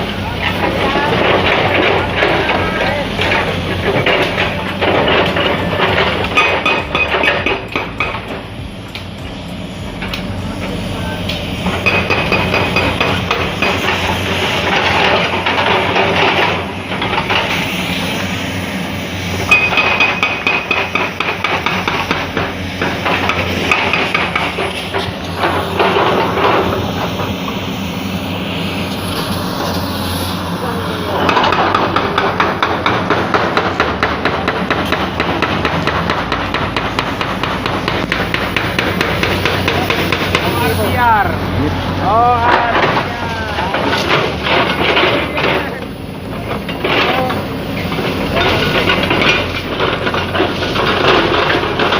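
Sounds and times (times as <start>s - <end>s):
concrete pounding and clatter: 0.0s - 18.3s, 19.3s - 27.7s, 31.1s - 51.9s
heavy machinery running: 0.0s - 51.9s
high metallic rings: 19.4s - 21.0s.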